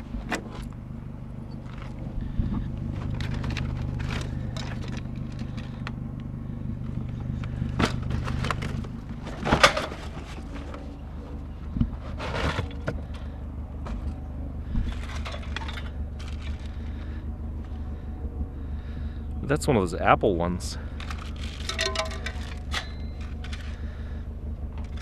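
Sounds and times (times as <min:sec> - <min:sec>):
vehicle engine humming: 0:00.0 - 0:25.0
objects clattering and knocking: 0:03.0 - 0:05.9, 0:07.3 - 0:11.0, 0:11.7 - 0:17.0, 0:20.9 - 0:23.9.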